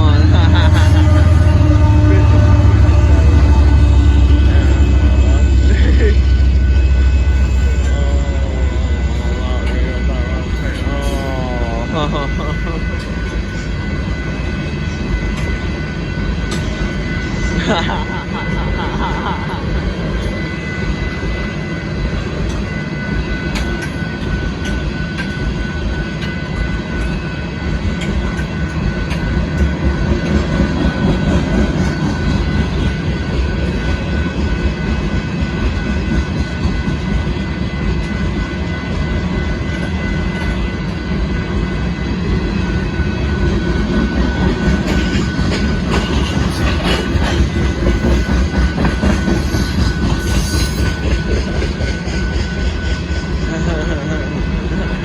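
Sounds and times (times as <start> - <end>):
thin high tones: 0.0 - 15.7
freight train wheels rumbling on rail: 0.0 - 55.0
rail joints clicking: 43.9 - 52.8.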